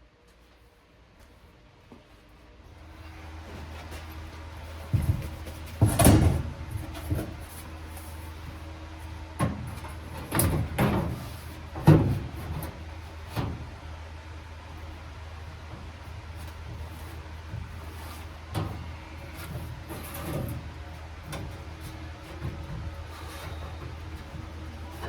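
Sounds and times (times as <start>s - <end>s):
steady low hum: 0.0s - 25.0s.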